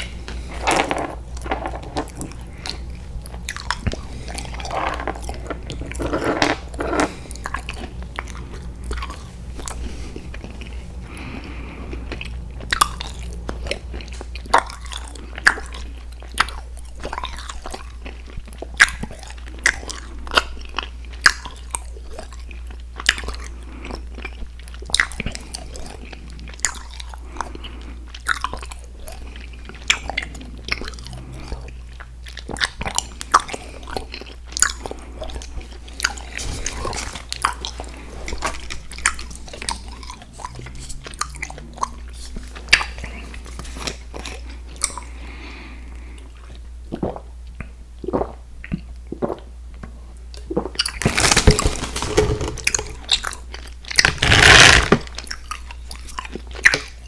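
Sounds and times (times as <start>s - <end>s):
steady low hum: 0.0s - 16.0s.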